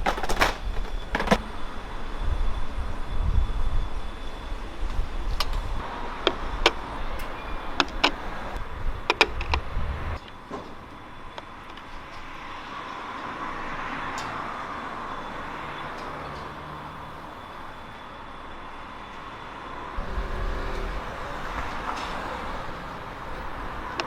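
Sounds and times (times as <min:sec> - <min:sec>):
street traffic noise: 0:00.0 - 0:24.0
vehicle engine passing: 0:19.8 - 0:24.0.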